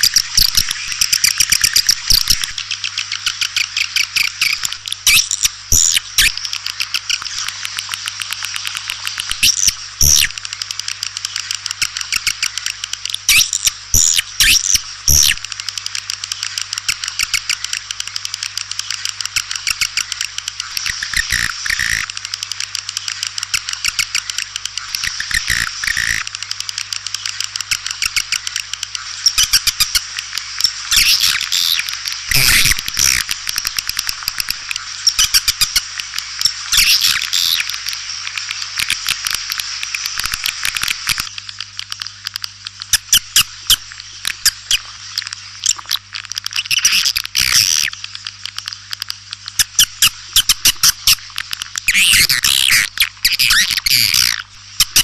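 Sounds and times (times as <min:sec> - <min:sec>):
swiftlets twittering: 0:00.0 - 0:17.8, 0:18.7 - 0:37.8, 0:49.5 - 0:55.0
steady low hum: 0:12.4 - 0:55.0.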